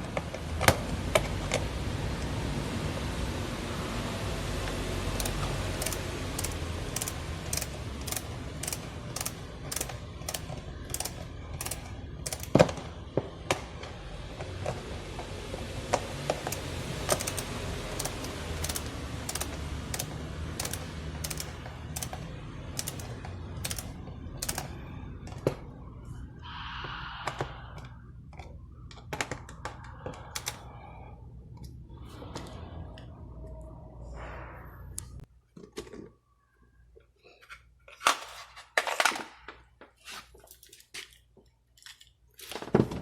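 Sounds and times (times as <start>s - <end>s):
mechanical clicking: 5.1s - 12.8s, 16.3s - 25.5s, 30.3s - 30.7s.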